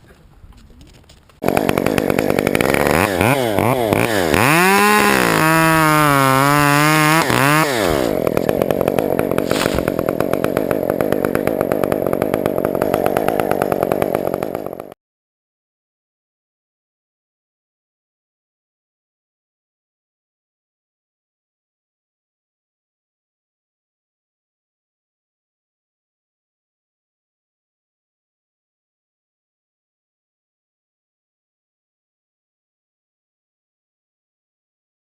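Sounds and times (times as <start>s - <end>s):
chainsaw revving: 1.4s - 15.0s.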